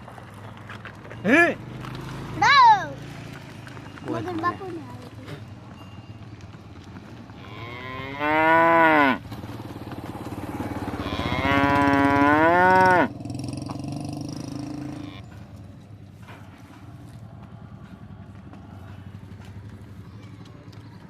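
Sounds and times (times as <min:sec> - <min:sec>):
buffalo mooing: 0:07.4 - 0:09.2, 0:10.9 - 0:15.4.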